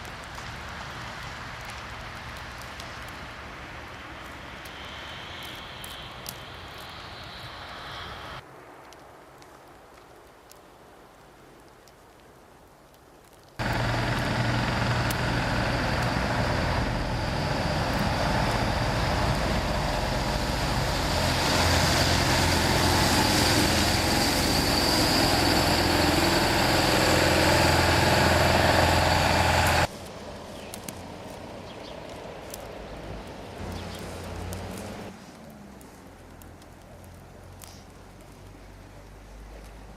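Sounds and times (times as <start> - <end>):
truck engine running: 13.6 - 29.9.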